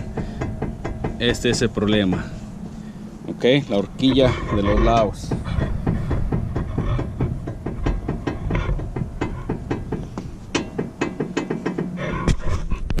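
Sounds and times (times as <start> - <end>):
rapid knocking of wheel play: 0.0 - 2.4, 4.0 - 12.1.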